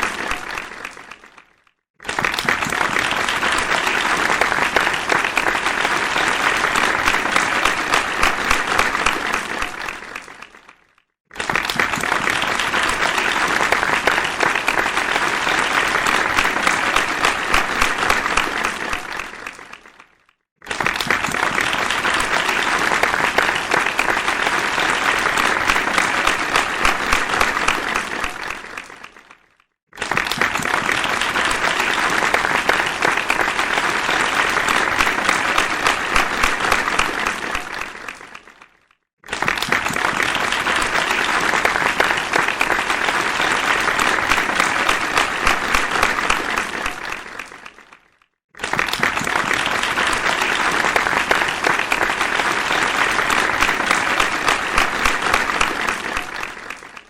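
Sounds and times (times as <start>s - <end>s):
audience applause: 0.0s - 57.0s.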